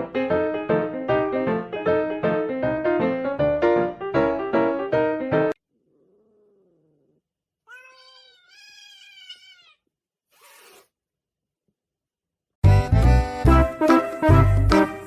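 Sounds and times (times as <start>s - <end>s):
music: 0.0s - 5.6s, 12.6s - 15.0s
cat meowing: 5.8s - 10.8s.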